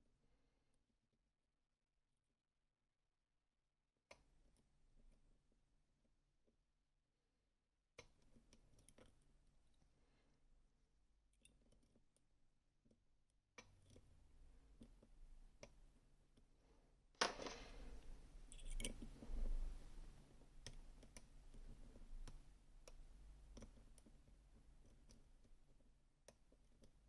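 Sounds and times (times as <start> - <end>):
lock-picking tools clicking: 18.5 - 19.2.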